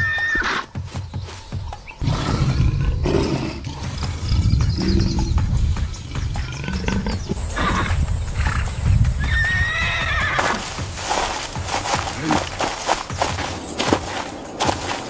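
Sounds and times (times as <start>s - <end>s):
animal's high quavering call: 1.9s - 10.8s
steady low rumble: 4.0s - 9.9s.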